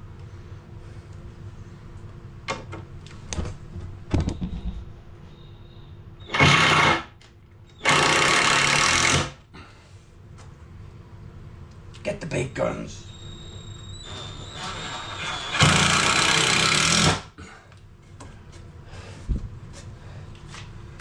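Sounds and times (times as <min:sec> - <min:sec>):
power driver driving screws: 0:06.3 - 0:07.1, 0:07.8 - 0:09.4, 0:14.0 - 0:17.3.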